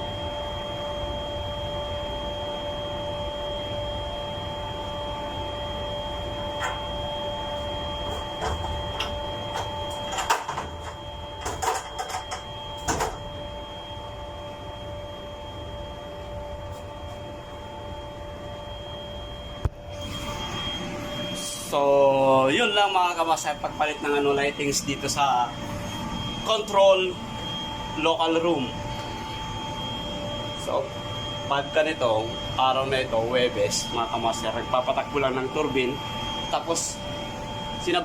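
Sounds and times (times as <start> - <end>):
machinery hum: 0.0 - 38.0
sharp clicks and knocks: 8.2 - 13.2.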